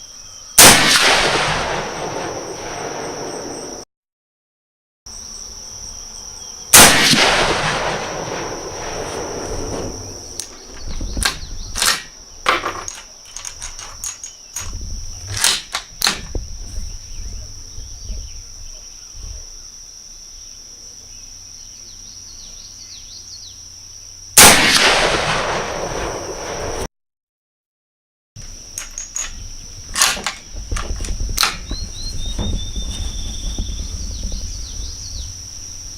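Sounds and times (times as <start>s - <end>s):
rifle shots with echo: 0.6s - 3.8s, 6.7s - 12.1s, 24.4s - 26.9s.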